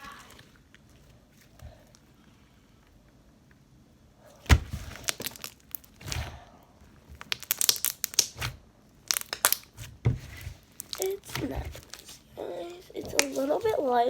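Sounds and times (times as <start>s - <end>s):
slime crinkling and crackling: 4.4s - 14.0s.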